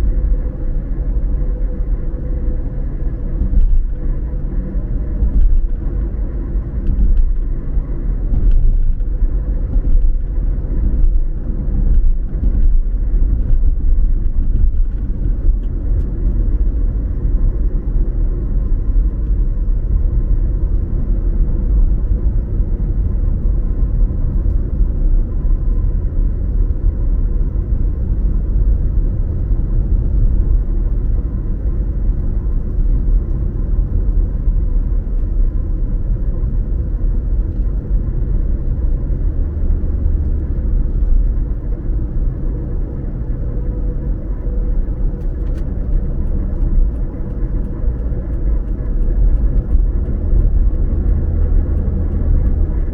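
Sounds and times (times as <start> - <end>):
car engine: 0.0 - 52.9
car tyre and road noise: 0.0 - 52.9.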